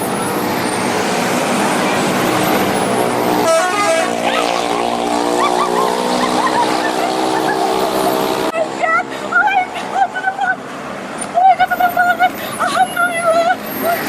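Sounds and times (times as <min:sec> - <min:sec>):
passing bus traffic: 0:00.0 - 0:14.0
multi-tone bus horn: 0:02.0 - 0:08.5.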